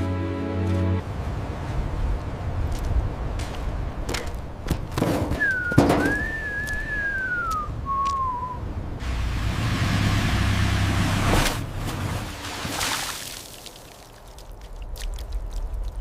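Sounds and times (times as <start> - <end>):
thin high whistle-like whine: 5.4 - 8.6.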